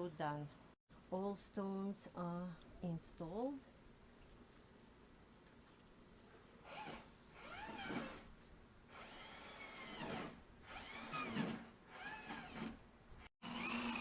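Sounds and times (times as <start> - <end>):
power tool motor whining: 8.9 - 12.8, 13.4 - 14.0.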